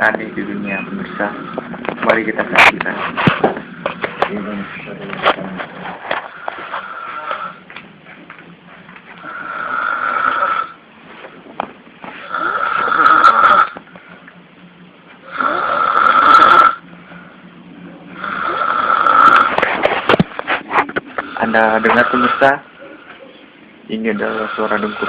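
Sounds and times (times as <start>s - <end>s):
loud snoring: 9.2s - 10.8s, 12.2s - 13.8s, 15.3s - 16.8s, 18.2s - 19.6s, 21.2s - 22.6s, 24.2s - 25.0s
quiet breathing: 16.8s - 18.8s.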